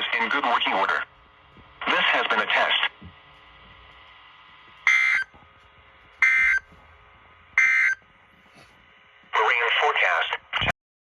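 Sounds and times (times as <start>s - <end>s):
digital data tone bursts: 4.8s - 5.4s, 6.2s - 6.7s, 7.6s - 8.0s.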